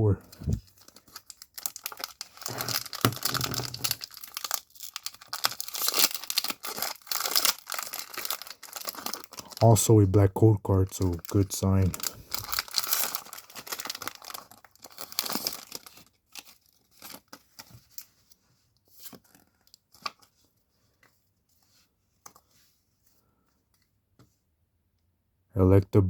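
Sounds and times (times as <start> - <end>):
cards rustling and tapping: 0.3 - 9.5, 11.0 - 22.6
foil wrapper tearing and crinkling: 0.6 - 9.6, 10.9 - 18.2.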